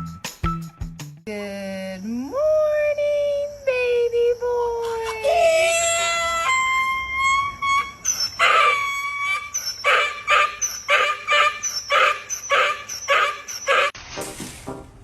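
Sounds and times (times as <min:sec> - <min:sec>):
dog howling: 0:05.2 - 0:14.0.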